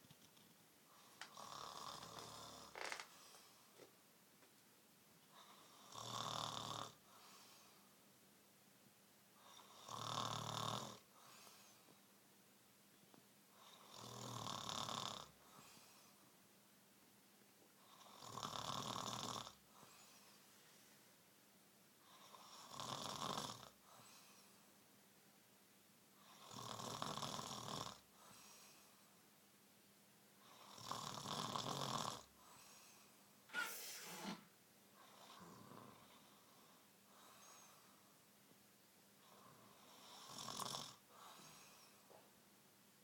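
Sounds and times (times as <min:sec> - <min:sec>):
faint breath: 0:03.0 - 0:03.8, 0:07.1 - 0:07.9, 0:11.1 - 0:12.0, 0:15.4 - 0:16.3, 0:19.7 - 0:21.2, 0:23.8 - 0:24.7, 0:28.2 - 0:29.2, 0:32.4 - 0:38.2, 0:41.1 - 0:42.2.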